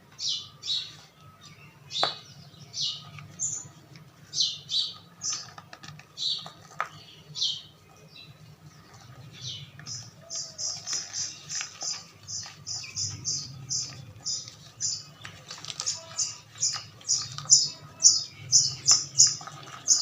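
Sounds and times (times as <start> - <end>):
soft powder crunching: 0.0 - 20.0.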